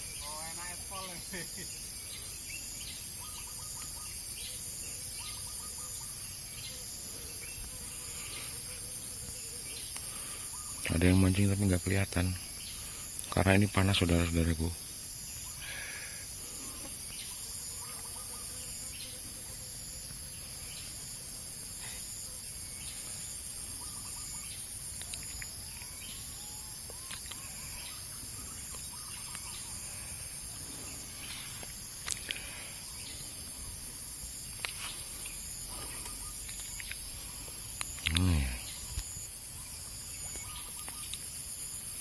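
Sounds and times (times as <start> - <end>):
steady high hiss: 0.0 - 42.0
short bird calls: 9.7 - 11.3, 34.8 - 39.2.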